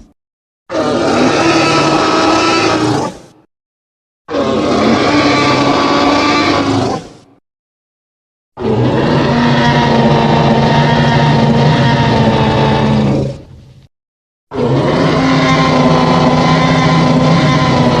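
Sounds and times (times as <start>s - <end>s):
monster roar: 0.7s - 3.3s, 4.3s - 7.2s, 8.6s - 13.4s, 14.5s - 18.0s.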